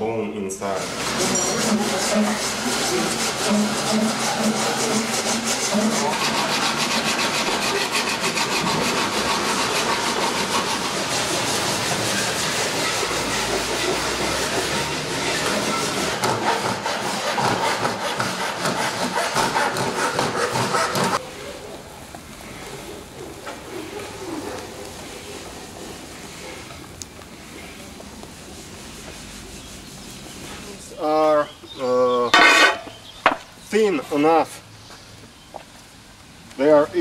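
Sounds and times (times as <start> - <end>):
saw cutting through horn: 0.6 - 21.2.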